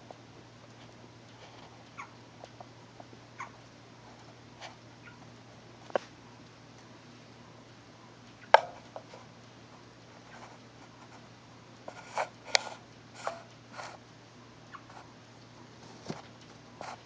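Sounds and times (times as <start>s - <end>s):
guinea pig hic sounds: 0.8s - 6.1s, 7.6s - 11.3s, 11.9s - 17.0s.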